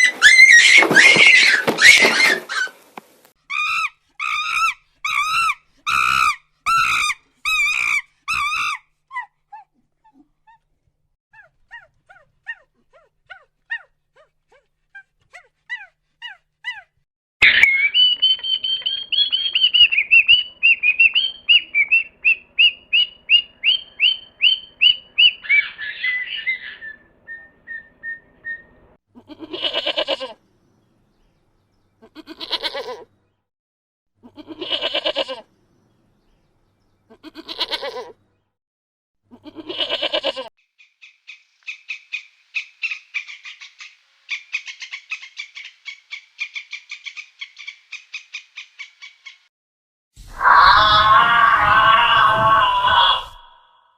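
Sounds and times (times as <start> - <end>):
high chirping bird calls: 17.4 - 28.8
animal bleating: 29.2 - 30.4, 32.0 - 33.1, 34.2 - 35.5, 37.1 - 38.2, 39.3 - 40.5, 50.3 - 53.6
fast high trilling call: 50.3 - 53.9.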